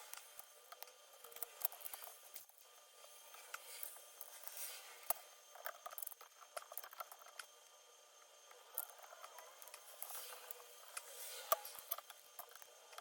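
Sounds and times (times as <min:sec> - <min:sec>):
keyboard parts clicking: 0:05.0 - 0:07.5, 0:08.5 - 0:13.0.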